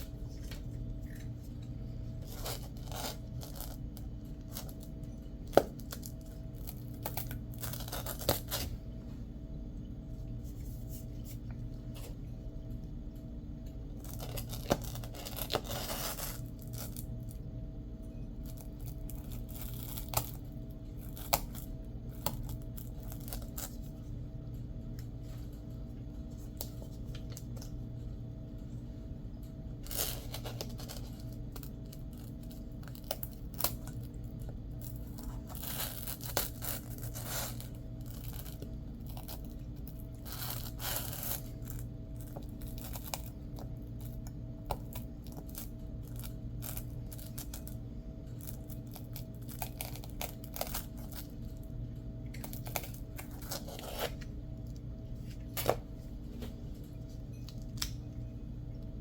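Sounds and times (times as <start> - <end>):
low hum: 0.0 - 59.0
velcro tearing and rustling: 2.2 - 3.9, 5.9 - 8.7, 14.1 - 17.1, 35.0 - 41.8, 52.5 - 54.3.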